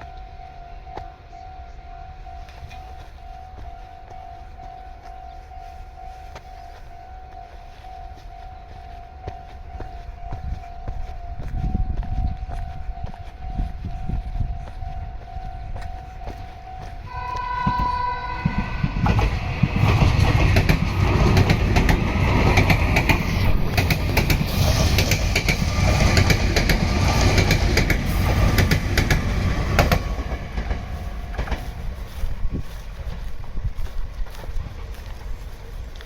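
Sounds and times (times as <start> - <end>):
train passing with wheels clicking: 0.0 - 36.0
train horn blast: 17.0 - 20.0.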